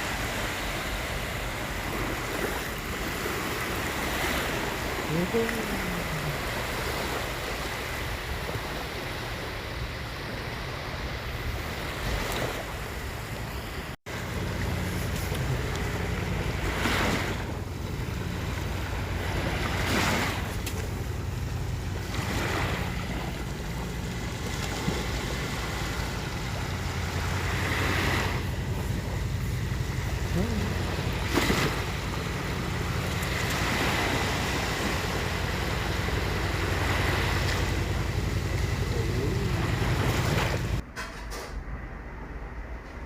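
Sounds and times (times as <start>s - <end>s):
sea waves washing on shore: 0.0s - 40.8s.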